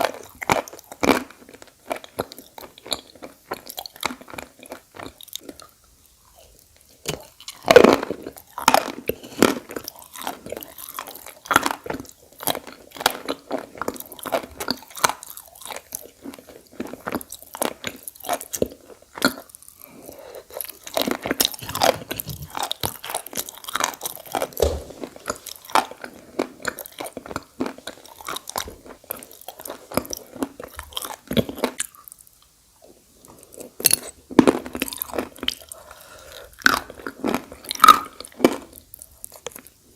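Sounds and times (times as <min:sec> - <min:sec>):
crunchy chewing close up: 0:00.0 - 0:32.3, 0:33.2 - 0:39.8.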